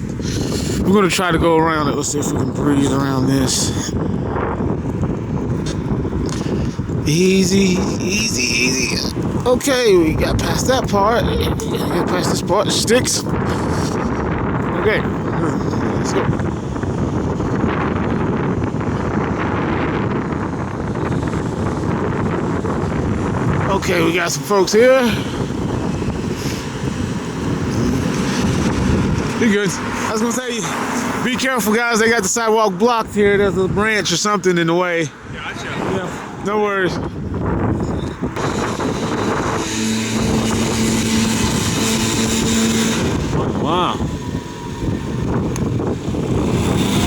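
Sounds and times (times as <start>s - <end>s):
wind buffeting microphone: 0.0s - 47.0s
vehicle engine note: 38.2s - 47.0s.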